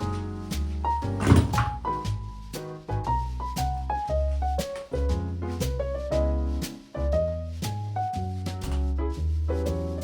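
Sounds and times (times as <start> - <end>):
upbeat jazzy music: 0.0 - 10.0.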